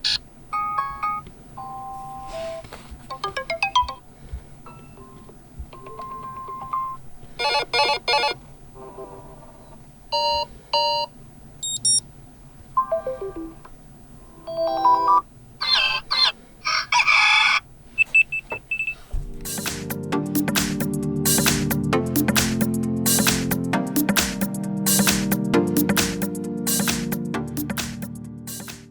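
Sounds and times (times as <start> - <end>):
phone alarm tones: 0.0 - 4.0, 4.7 - 12.0, 12.8 - 13.7, 14.3 - 16.2, 16.9 - 19.0.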